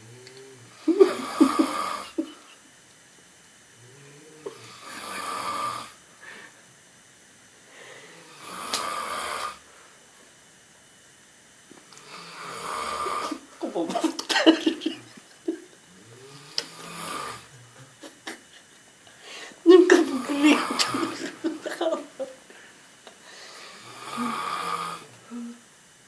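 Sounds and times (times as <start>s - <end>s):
person snoring: 0.0s - 2.3s, 3.8s - 6.4s, 7.8s - 9.7s, 12.0s - 13.5s, 15.9s - 17.9s, 19.9s - 21.4s, 23.4s - 25.6s.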